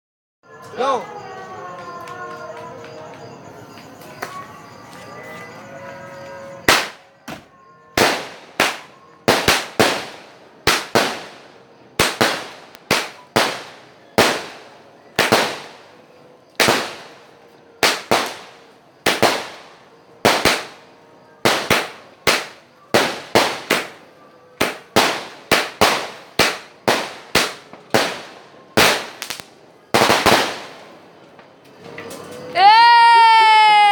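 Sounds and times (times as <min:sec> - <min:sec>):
rocket fireworks bangs: 0:06.6 - 0:24.0, 0:24.6 - 0:31.2.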